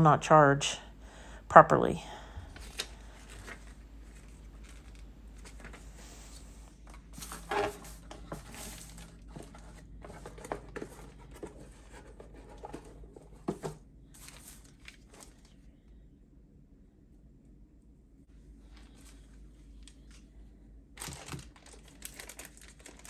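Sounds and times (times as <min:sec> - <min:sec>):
packaging rustling and crinkling: 0:02.5 - 0:15.6, 0:21.0 - 0:23.0.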